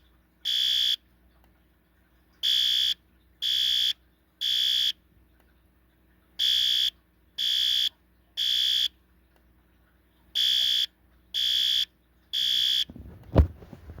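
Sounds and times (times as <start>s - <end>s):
fire alarm horn beeping: 0.5s - 1.0s, 2.4s - 5.0s, 6.4s - 8.9s, 10.4s - 13.0s
rustling: 12.9s - 14.0s
sharp thump: 13.0s - 14.0s.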